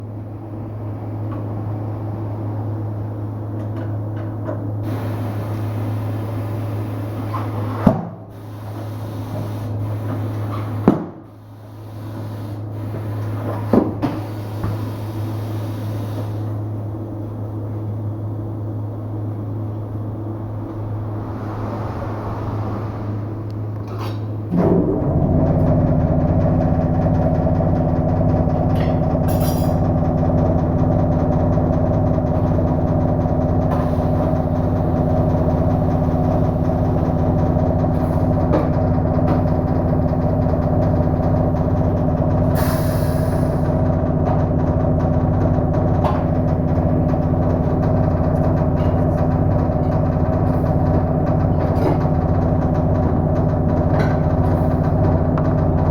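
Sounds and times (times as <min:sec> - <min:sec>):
machine humming: 0:24.5 - 0:42.5.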